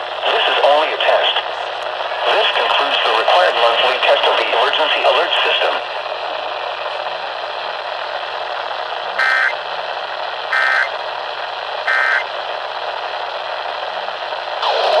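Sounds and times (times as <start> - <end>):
radio static: 0.0 - 6.0, 9.2 - 9.6, 10.5 - 11.0, 11.9 - 12.3, 14.6 - 15.0
digital data tone bursts: 9.2 - 9.6, 10.6 - 11.0, 11.9 - 12.3.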